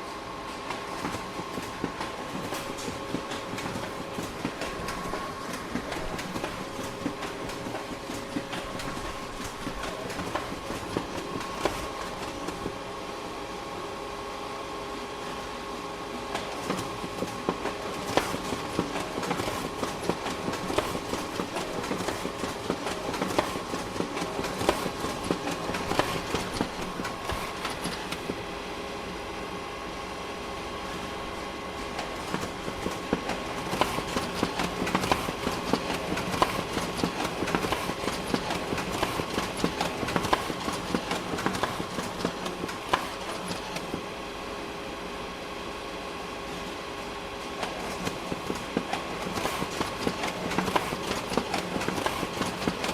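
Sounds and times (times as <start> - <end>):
printer hum: 0.0 - 52.9
printer clicking and rattling: 0.7 - 12.7, 16.3 - 28.5, 32.0 - 44.1, 47.6 - 52.9.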